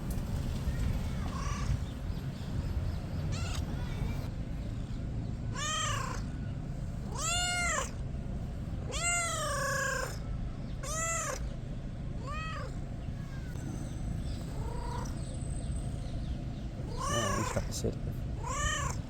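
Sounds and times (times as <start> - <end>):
kitten meowing: 1.3 - 1.8, 3.3 - 4.1, 5.5 - 6.4, 7.0 - 8.0, 8.8 - 10.2, 10.8 - 11.5, 12.2 - 13.6, 14.4 - 15.3, 16.8 - 17.7, 18.4 - 19.0.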